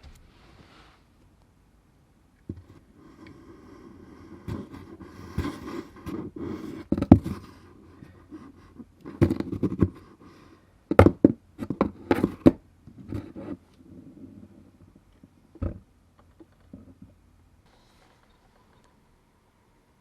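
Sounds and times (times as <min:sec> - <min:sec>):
knocks and thumps: 0:15.6 - 0:17.1.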